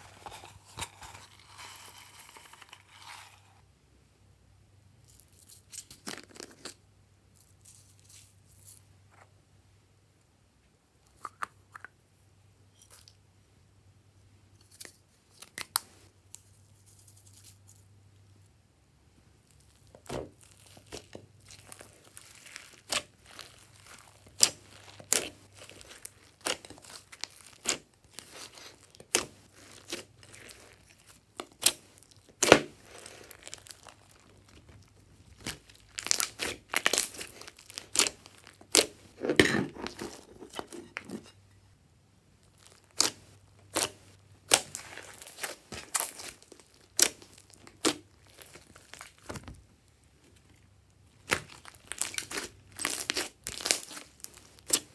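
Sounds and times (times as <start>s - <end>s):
slime kneaded with sticky pops: 19.5s - 40.8s, 42.4s - 54.9s.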